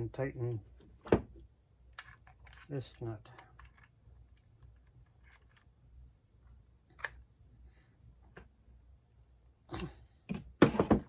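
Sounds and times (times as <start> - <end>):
metal parts clicking: 1.9 - 5.7
metal parts clattering: 2.0 - 3.9.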